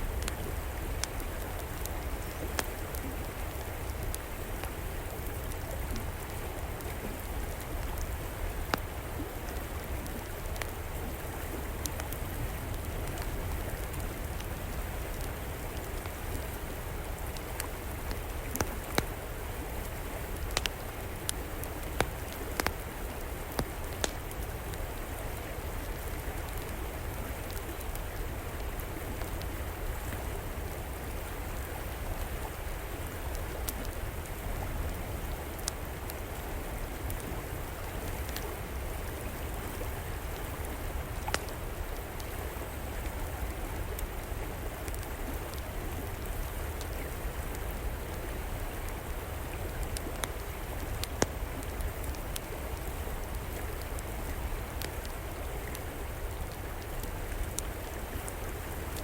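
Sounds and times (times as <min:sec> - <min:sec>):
river water flowing: 0:00.0 - 0:59.0
wood fire crackling: 0:00.0 - 0:59.0.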